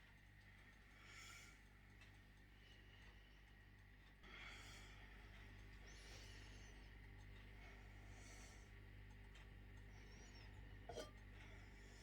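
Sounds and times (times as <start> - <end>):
low steady hum: 2.0 - 12.0.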